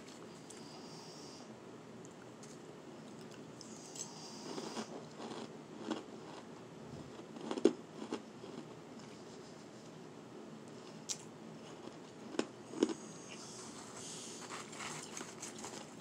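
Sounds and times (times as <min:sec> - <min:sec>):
chewing shaved ice crunches: 0:02.2 - 0:06.5, 0:07.1 - 0:09.2, 0:10.8 - 0:13.4.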